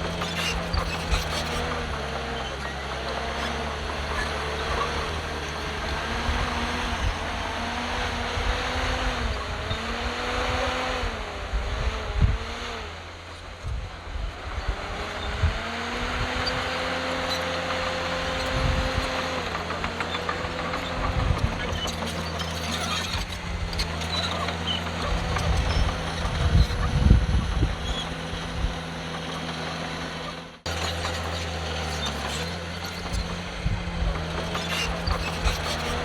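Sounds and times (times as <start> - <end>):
diesel machinery running: 0.0 - 36.0
knocks and clatter: 17.2 - 27.7.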